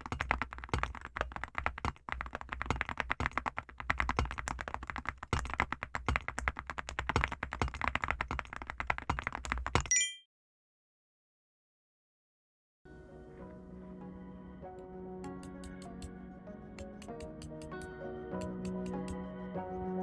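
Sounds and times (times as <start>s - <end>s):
fast mechanical keyboard typing: 0.0s - 9.9s.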